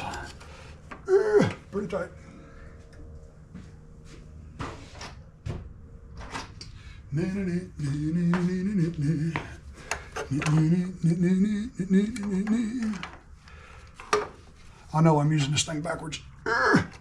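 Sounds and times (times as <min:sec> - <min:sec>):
man straining: 0:01.0 - 0:01.7, 0:16.4 - 0:17.0.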